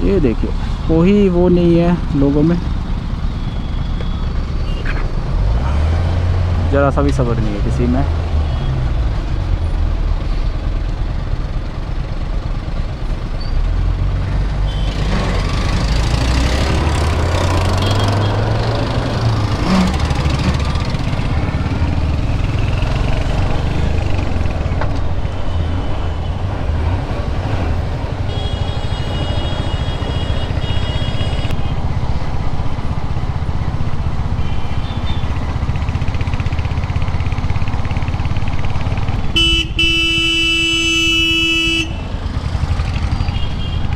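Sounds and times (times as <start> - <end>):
motorcycle engine: 0.0 - 43.9
road noise: 0.0 - 43.9
vehicle horn honking: 3.4 - 5.1, 14.7 - 15.4, 17.1 - 18.8, 25.2 - 26.5, 28.2 - 31.8, 34.3 - 35.3, 39.3 - 43.9.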